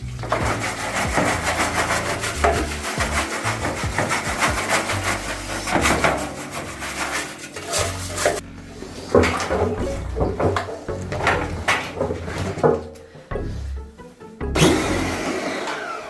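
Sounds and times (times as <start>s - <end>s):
stiff brush scrubbing: 0.0s - 11.5s.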